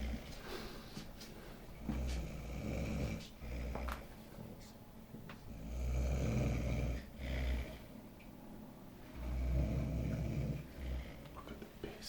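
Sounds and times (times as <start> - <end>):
man snoring: 1.8 - 4.0, 5.5 - 7.9, 9.2 - 11.4.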